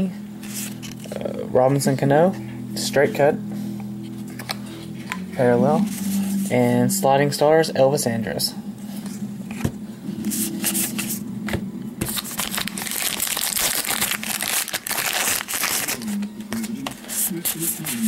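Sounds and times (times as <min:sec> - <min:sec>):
foil wrapper tearing and crinkling: 0:12.0 - 0:16.2.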